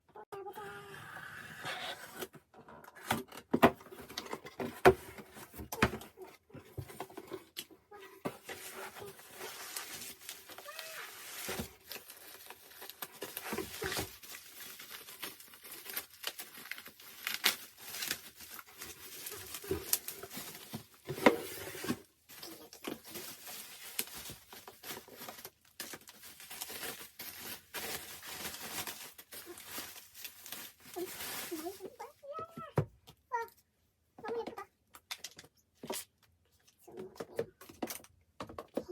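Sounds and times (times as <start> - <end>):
shrink wrap crinkling and tearing: 8.4 - 32.6.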